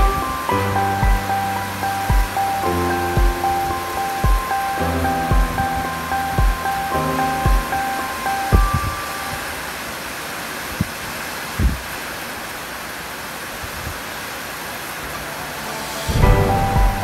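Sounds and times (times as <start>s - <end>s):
music: 0.0s - 9.4s, 15.2s - 17.0s
typhoon wind and rain: 0.0s - 17.0s
short low thumps: 5.3s - 5.6s, 16.2s - 17.0s.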